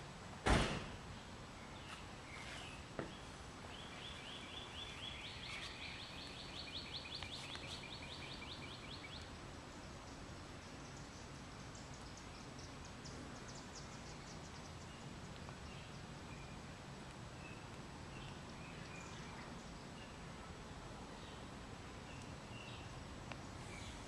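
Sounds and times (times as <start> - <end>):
sharp thump: 0.4 - 1.0
bird chirping rapidly: 1.7 - 9.3.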